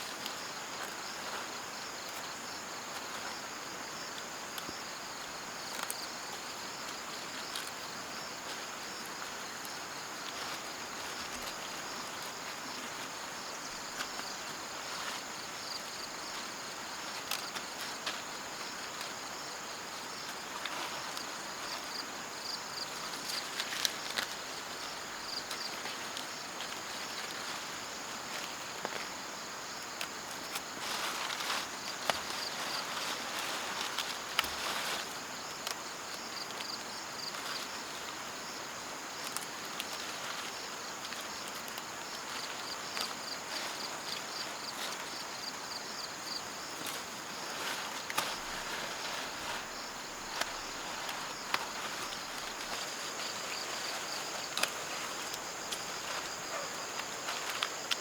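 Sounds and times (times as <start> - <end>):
insects buzzing and trilling: 0.0 - 58.0
soft outdoor hiss: 0.0 - 58.0.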